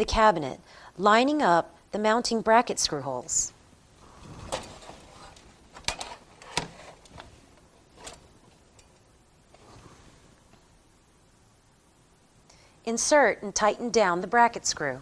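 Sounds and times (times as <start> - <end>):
metal scraping and knocking: 4.0 - 8.9.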